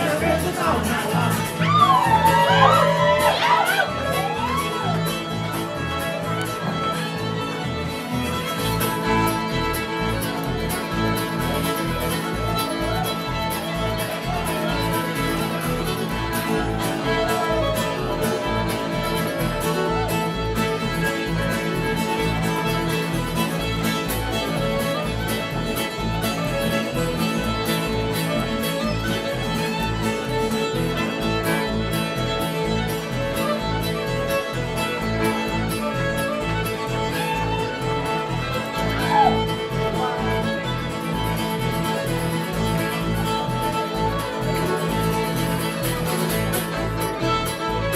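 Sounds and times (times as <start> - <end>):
bluegrass band playing: 0.0 - 47.9
fiddles playing: 0.0 - 47.9
guitar: 0.0 - 47.9
mandolin: 0.0 - 47.9
upright bass: 0.0 - 47.9.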